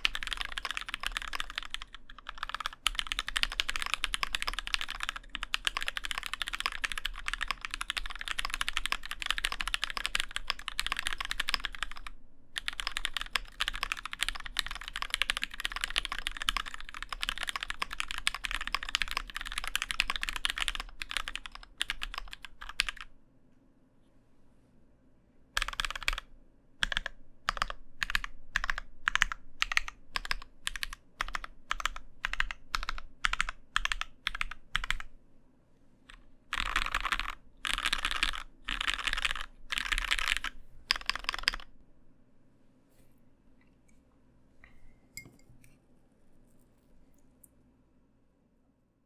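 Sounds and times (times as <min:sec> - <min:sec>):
mechanical keyboard typing: 0:00.0 - 0:23.1, 0:25.6 - 0:35.1, 0:36.1 - 0:41.7.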